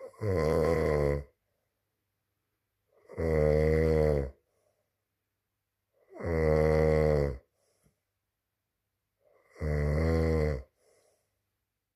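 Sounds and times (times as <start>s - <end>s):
person snoring: 0.0s - 1.4s, 3.0s - 4.4s, 6.0s - 7.5s, 9.3s - 11.1s
faint breathing: 4.4s - 5.1s, 7.4s - 8.2s, 10.7s - 11.6s.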